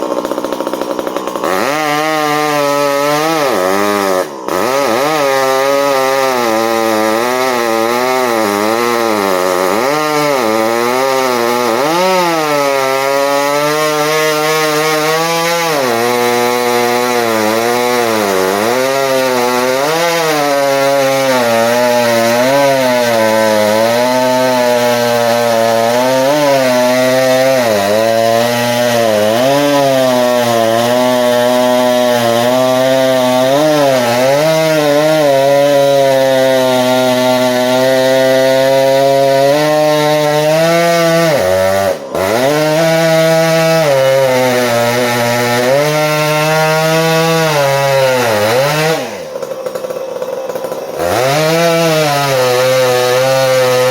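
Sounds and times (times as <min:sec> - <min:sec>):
chainsaw cutting wood: 0:00.0 - 0:53.9.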